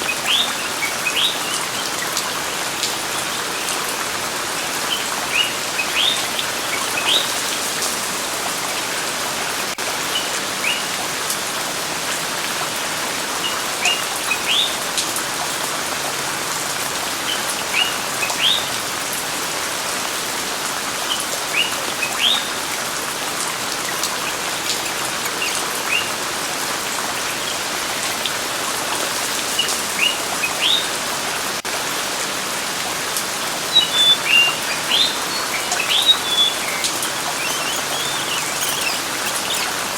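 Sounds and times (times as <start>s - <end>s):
rain hiss: 0.0s - 39.9s
rising bird chirps: 33.8s - 39.9s.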